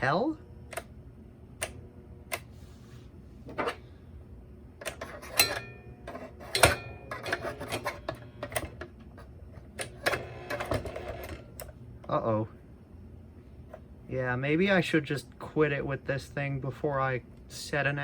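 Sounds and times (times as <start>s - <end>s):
space heater clicking and knocking: 4.8s - 12.2s.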